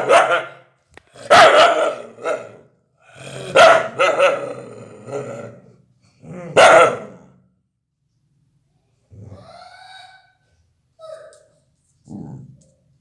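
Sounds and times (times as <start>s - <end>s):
dog barking and growling: 0.0s - 7.4s.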